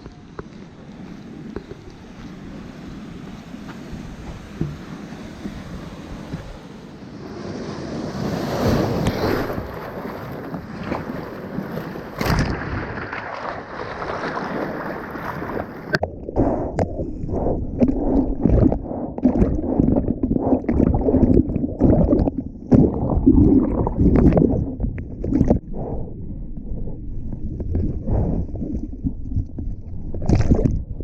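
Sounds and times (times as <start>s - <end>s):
ocean surf: 0.0s - 16.6s
water splashing and gurgling: 0.0s - 31.0s
wind noise on microphone: 15.4s - 31.0s.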